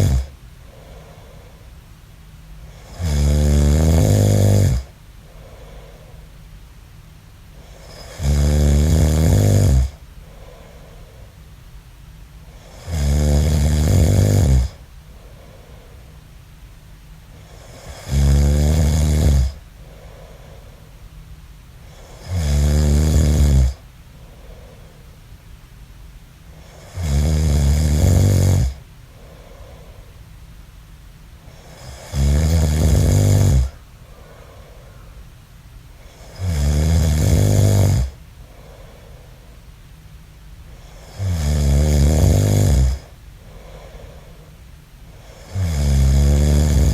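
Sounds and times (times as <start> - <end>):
man snoring: 0.0 - 1.4, 2.7 - 4.9, 7.6 - 10.6, 12.5 - 14.8, 17.4 - 19.6, 21.9 - 23.8, 26.6 - 29.8, 31.5 - 33.8, 36.1 - 38.8, 40.8 - 44.3, 45.2 - 46.9
quiet breathing: 0.0 - 46.9.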